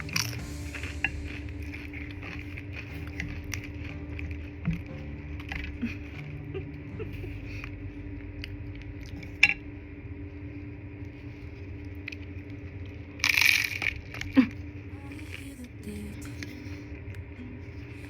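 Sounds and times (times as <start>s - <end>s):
loud crunch: 0.0s - 6.4s
crunchy salad chewing: 0.0s - 9.7s.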